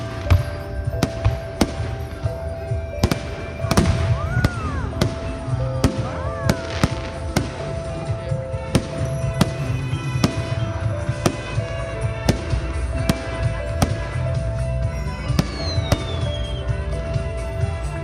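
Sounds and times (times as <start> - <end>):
fireworks bangs: 0.0 - 18.0
music: 0.0 - 18.0
falling firework whistle: 9.0 - 11.7, 14.9 - 17.2.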